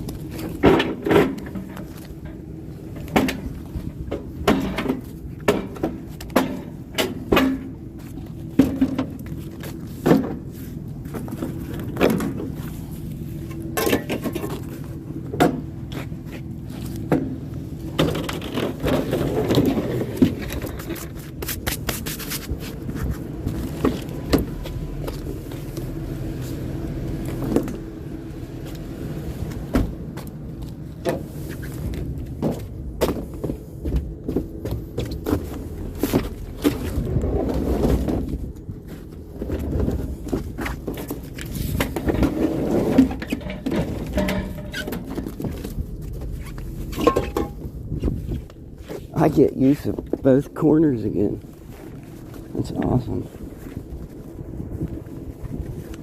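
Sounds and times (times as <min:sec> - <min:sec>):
vehicle engine idling: 0:00.0 - 0:42.2, 0:43.0 - 0:56.0
scrap metal knocks and clanks: 0:00.3 - 0:07.8, 0:13.7 - 0:14.8, 0:39.4 - 0:48.5
metal scraping: 0:41.5 - 0:49.1.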